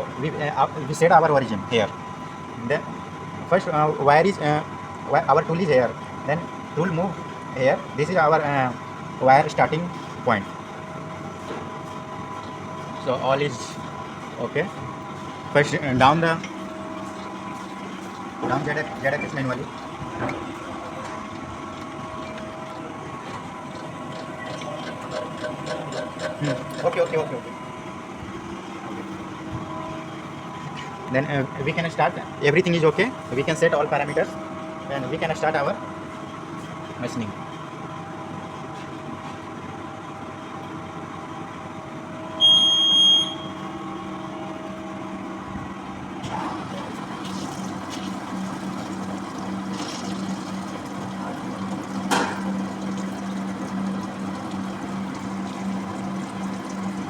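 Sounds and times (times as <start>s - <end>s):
machine humming: 41.2s - 57.0s
loud electronic beep: 42.4s - 43.6s.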